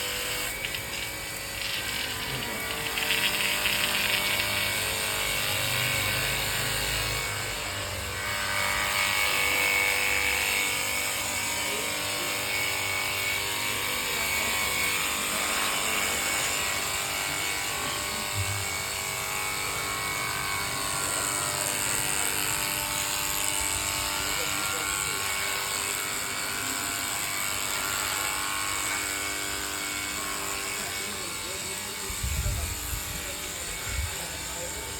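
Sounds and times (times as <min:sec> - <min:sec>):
water spray hissing: 0:00.0 - 0:04.7
pressure washer motor hum: 0:00.0 - 0:07.9.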